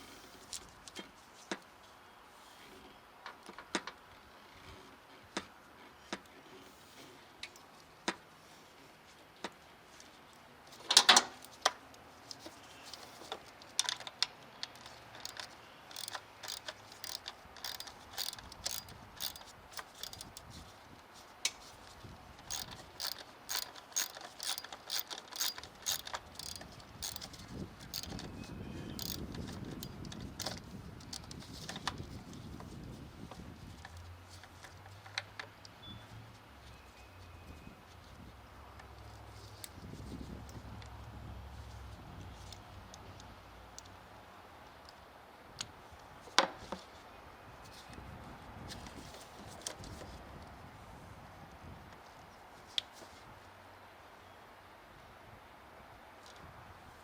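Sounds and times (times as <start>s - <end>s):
hand ratchet clicking: 14.7s - 20.4s, 22.5s - 28.2s, 29.0s - 29.2s
metallic clatter: 14.8s - 20.4s, 22.5s - 27.3s, 29.0s - 29.2s.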